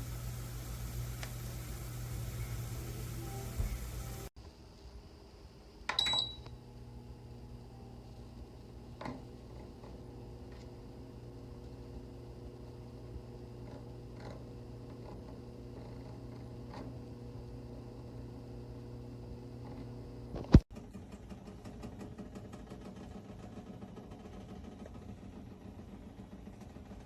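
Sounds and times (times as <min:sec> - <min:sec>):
appliance motor humming: 0:00.0 - 0:04.3, 0:06.6 - 0:20.6.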